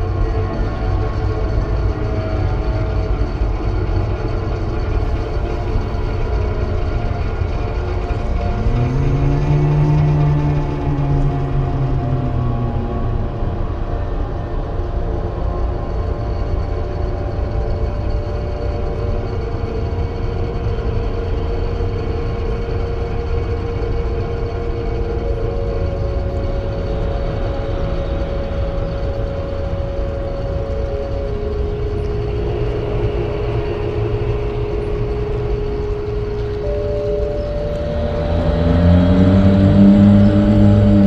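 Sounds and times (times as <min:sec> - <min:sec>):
held eerie tones: 0:04.9 - 0:41.0
deep rumble: 0:24.1 - 0:41.0.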